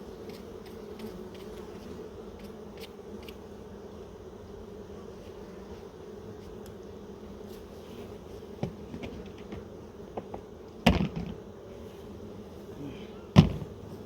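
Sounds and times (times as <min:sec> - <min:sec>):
bees buzzing: 0:00.0 - 0:14.0
loud knocks of hive boxes: 0:08.5 - 0:11.6, 0:13.3 - 0:14.0.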